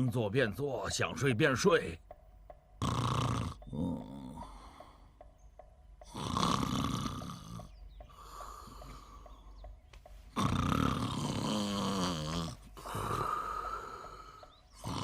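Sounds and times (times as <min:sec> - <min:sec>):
man snoring loudly: 0:02.8 - 0:04.7, 0:06.1 - 0:07.7, 0:10.3 - 0:15.0.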